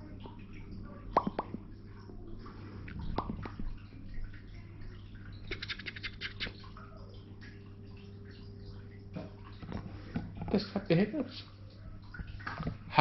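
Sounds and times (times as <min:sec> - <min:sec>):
low steady hum: 0:00.0 - 0:13.0
baby hiccupping: 0:05.5 - 0:06.5.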